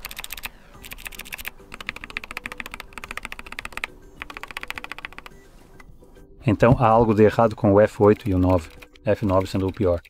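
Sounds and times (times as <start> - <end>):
keyboard key tapped rapidly: 0.0 - 5.4, 7.4 - 10.0.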